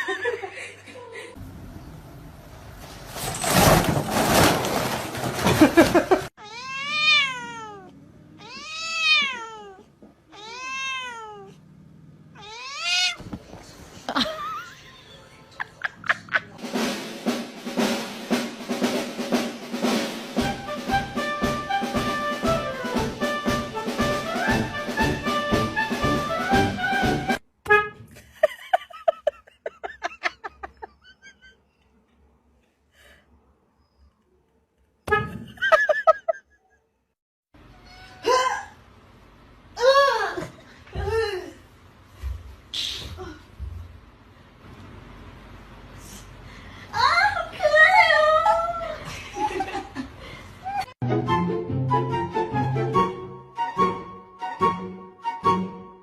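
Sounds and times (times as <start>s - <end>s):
cat meowing: 6.4s - 11.6s, 12.3s - 13.2s
jazzy brass band music: 19.9s - 27.9s.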